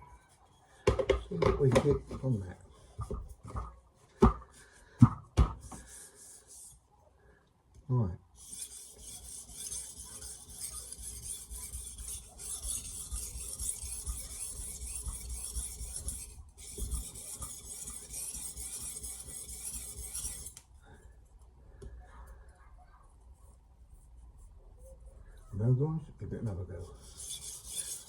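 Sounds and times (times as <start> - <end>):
knife scraping on sharpening plate: 8.4 - 20.6, 27.0 - 28.0.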